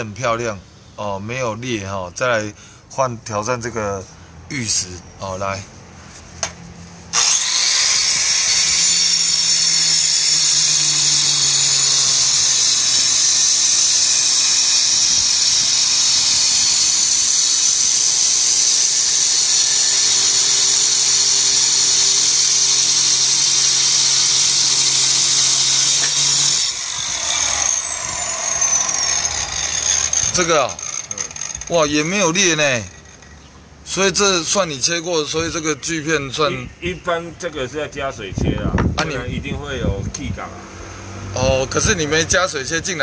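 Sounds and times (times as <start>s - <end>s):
stone cutter grinding whine: 7.2s - 33.5s.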